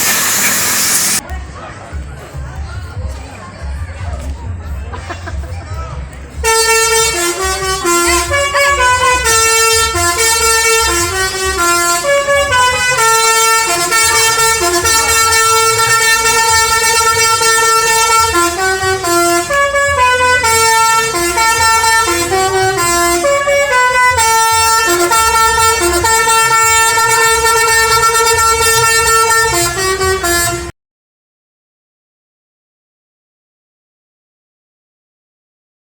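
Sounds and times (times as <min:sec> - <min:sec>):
multi-tone bus horn melody: 0:00.0 - 0:01.2, 0:06.4 - 0:30.7.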